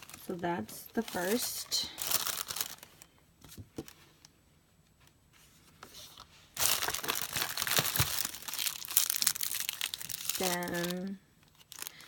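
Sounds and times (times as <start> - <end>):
packaging crinkling: 0.0 - 3.1, 6.6 - 12.0.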